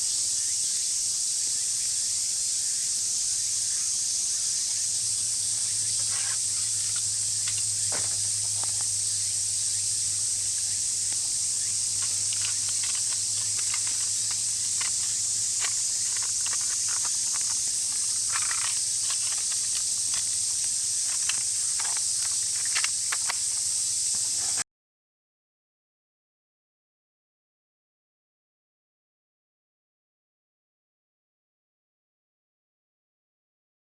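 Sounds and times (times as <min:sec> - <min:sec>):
steady high hiss: 0:00.0 - 0:24.6
wood fire crackling and popping: 0:11.0 - 0:23.6.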